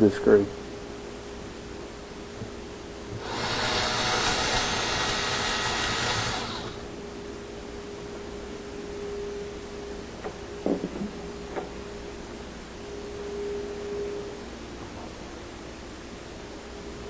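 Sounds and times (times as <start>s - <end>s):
power driver running: 3.2s - 6.9s.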